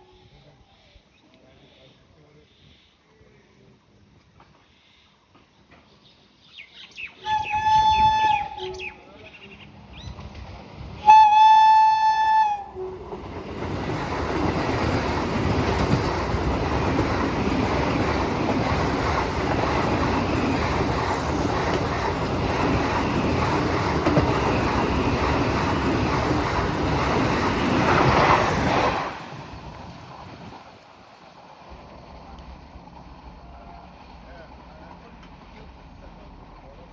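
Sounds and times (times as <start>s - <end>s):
train passing at speed: 6.8s - 36.9s
train horn blasts: 7.2s - 9.0s, 11.0s - 13.2s.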